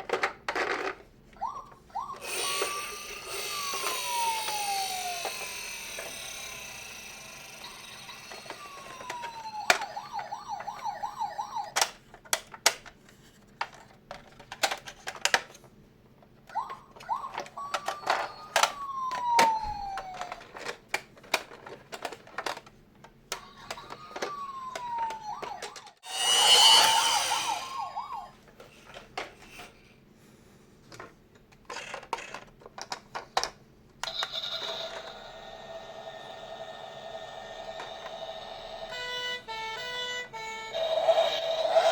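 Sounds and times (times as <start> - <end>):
toy electronic siren: 1.4 - 12.0, 16.5 - 20.7, 23.3 - 28.4, 34.0 - 41.9.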